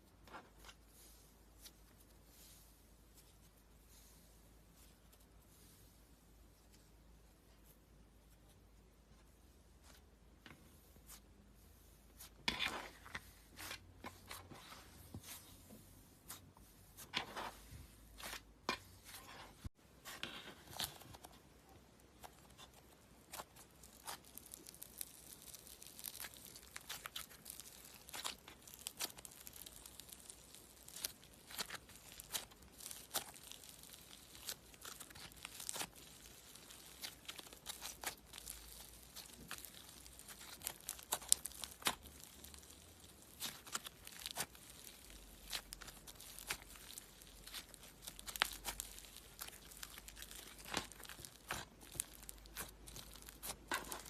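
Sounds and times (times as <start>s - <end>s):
slime crackling and popping: 22.0s - 54.0s.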